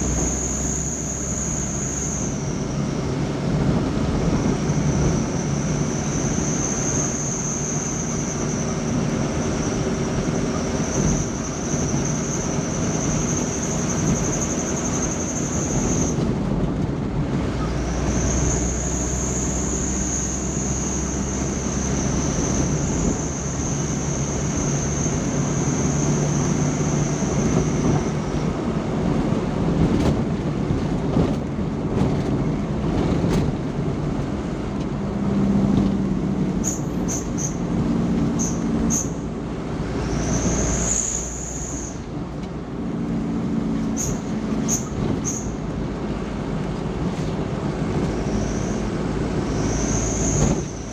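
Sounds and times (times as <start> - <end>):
vehicle engine and road noise: 0.0 - 50.9.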